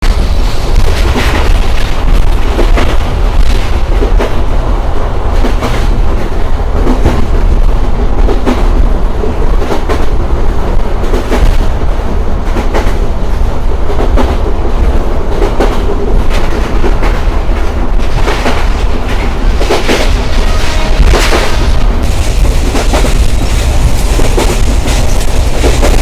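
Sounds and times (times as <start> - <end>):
train rumbling: 0.0 - 26.0.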